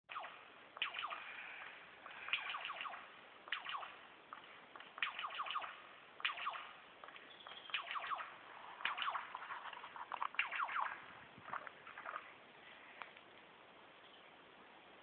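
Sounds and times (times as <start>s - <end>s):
lyrebird whistled calls: 7.3s - 9.3s.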